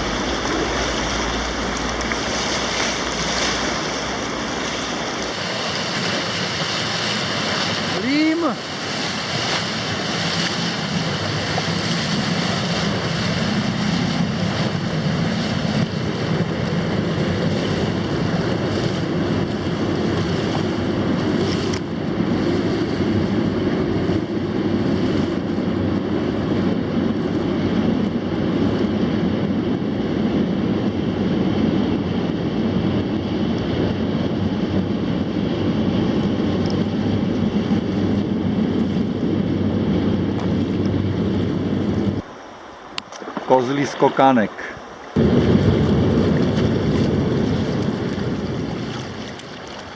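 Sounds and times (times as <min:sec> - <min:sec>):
rushing river water: 0:00.0 - 0:15.8, 0:42.2 - 0:49.9
wind buffeting microphone: 0:00.0 - 0:49.9.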